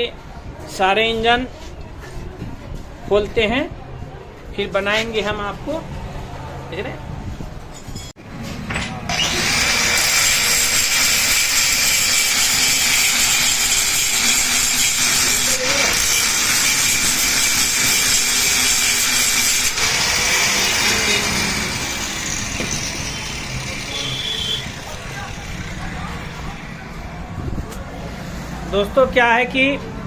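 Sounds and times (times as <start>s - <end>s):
angle grinder grinding steel: 9.1s - 26.6s.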